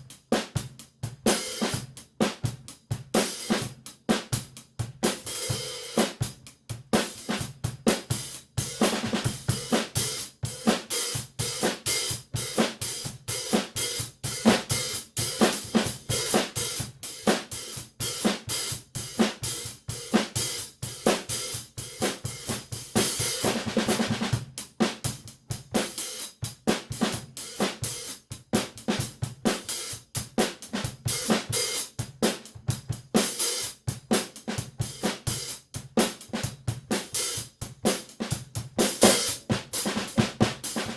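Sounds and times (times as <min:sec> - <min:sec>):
snare drum: 0:00.0 - 0:06.4, 0:07.0 - 0:40.9
bass drum: 0:18.8 - 0:27.7, 0:34.0 - 0:40.9.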